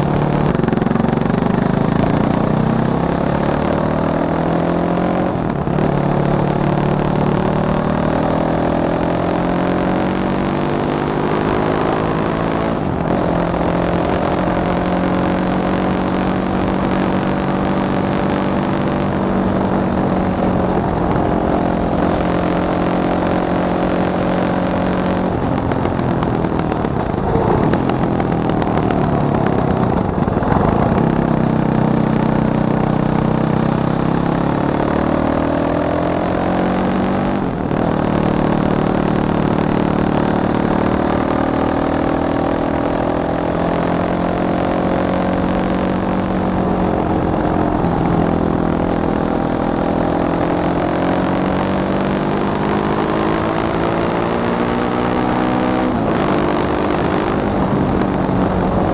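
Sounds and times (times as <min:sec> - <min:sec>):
motorcycle engine revving: 0:00.0 - 0:58.9.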